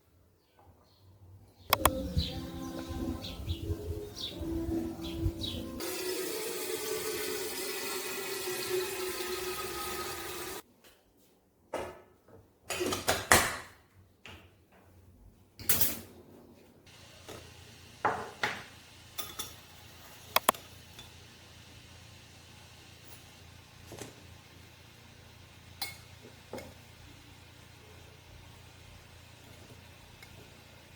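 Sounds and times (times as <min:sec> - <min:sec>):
water running from tap: 0:05.8 - 0:10.6, 0:16.9 - 0:30.9.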